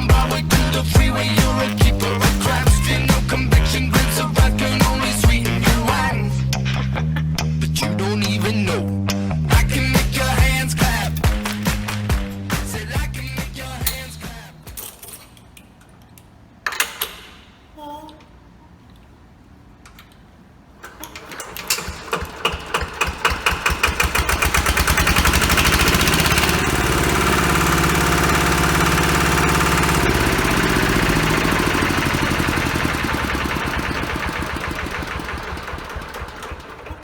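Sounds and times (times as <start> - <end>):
small motor machine rattling: 0.0 - 6.0, 9.6 - 14.2, 20.8 - 37.0.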